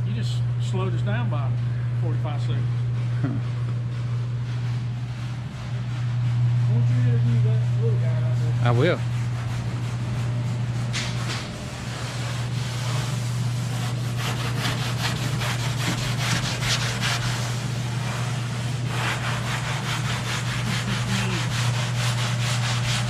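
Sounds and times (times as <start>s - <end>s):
steady low hum: 0.0s - 23.0s
sanding strokes rasping: 4.6s - 23.0s.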